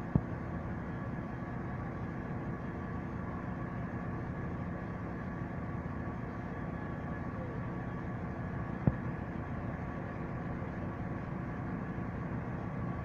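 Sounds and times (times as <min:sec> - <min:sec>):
diesel engine droning: 0:00.0 - 0:13.0.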